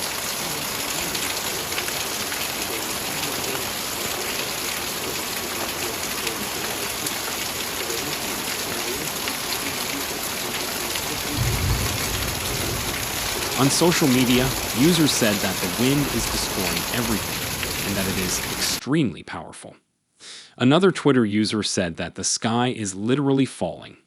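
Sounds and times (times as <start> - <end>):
heavy rain: 0.0 - 18.8.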